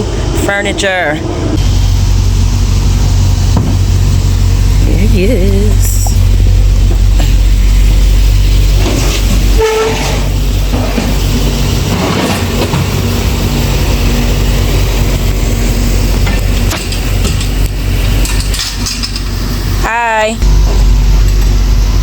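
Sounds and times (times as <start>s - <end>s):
vehicle engine rumbling: 0.0s - 22.0s.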